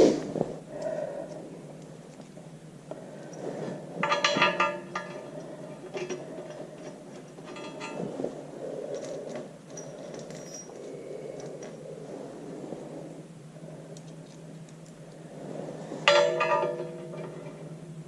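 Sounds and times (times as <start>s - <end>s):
metal bolts and washers clinking: 4.0s - 8.1s, 8.9s - 10.8s, 16.1s - 17.7s.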